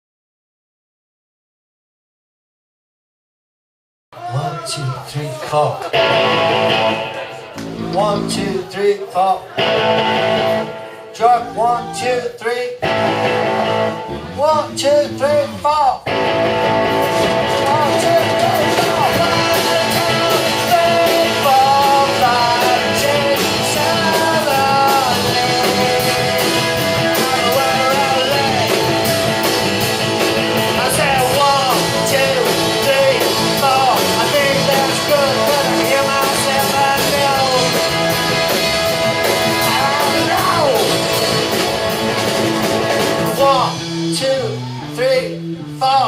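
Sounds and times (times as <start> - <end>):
live rock band playing: 5.9 - 46.0
person singing: 6.1 - 9.8, 11.1 - 12.8, 17.5 - 29.0, 30.7 - 37.9, 39.4 - 41.1.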